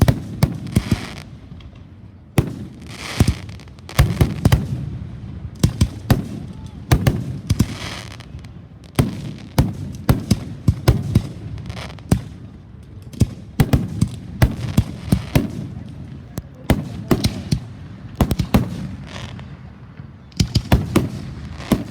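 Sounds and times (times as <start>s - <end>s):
fireworks crackling: 0.0s - 21.9s
fireworks banging: 5.5s - 21.9s.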